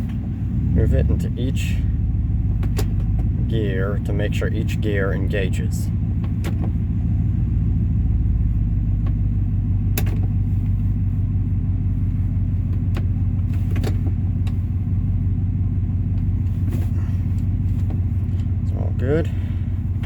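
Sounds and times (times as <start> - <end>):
truck engine idling: 0.0 - 20.0
gear shifter clicks: 2.4 - 3.4, 6.1 - 6.9, 8.9 - 10.8, 12.4 - 14.7, 16.0 - 18.7.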